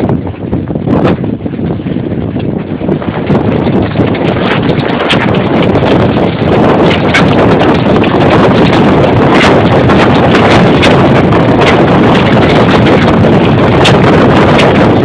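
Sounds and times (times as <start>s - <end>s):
wind buffeting microphone: 0.0s - 15.0s
sharp crackles: 3.5s - 15.0s.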